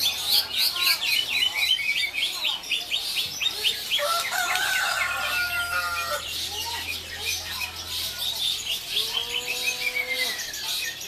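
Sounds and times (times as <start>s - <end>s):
songbirds chirping: 0.0s - 11.0s
rooster crowing: 4.0s - 6.2s.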